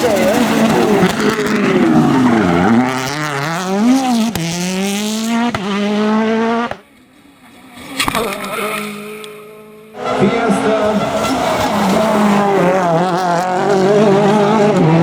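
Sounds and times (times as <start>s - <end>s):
car engine revving hard: 0.0s - 6.8s, 10.0s - 15.0s.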